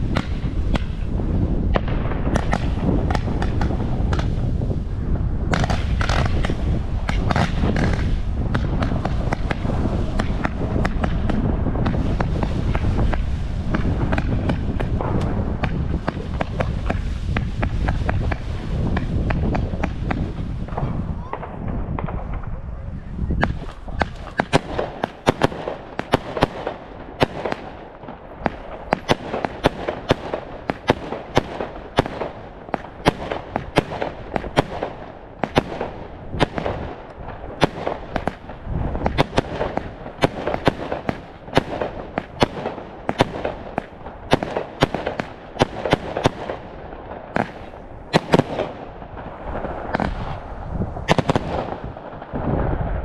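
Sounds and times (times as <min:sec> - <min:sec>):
firecrackers crackling bangs: 0:00.0 - 0:22.7, 0:23.3 - 0:53.0
distant fireworks rumble: 0:00.0 - 0:53.0.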